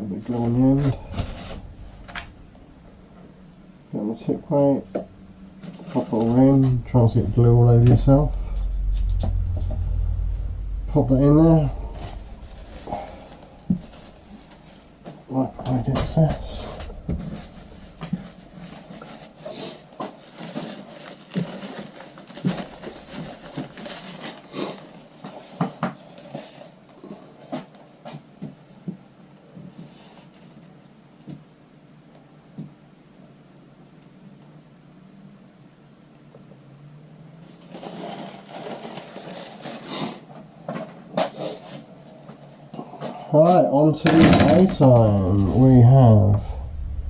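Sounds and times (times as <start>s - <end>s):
low steady hum: 0.0s - 19.4s, 43.9s - 47.0s
rustling and scraping: 0.3s - 26.7s, 37.4s - 39.9s.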